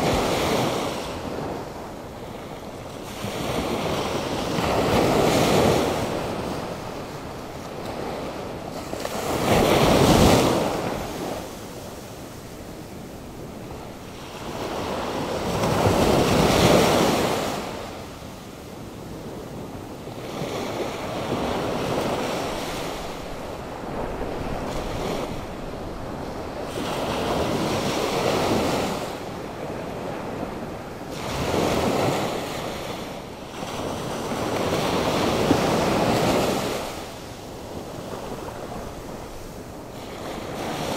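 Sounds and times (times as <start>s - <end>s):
wind: 0.0s - 40.9s
waves breaking: 19.0s - 40.9s.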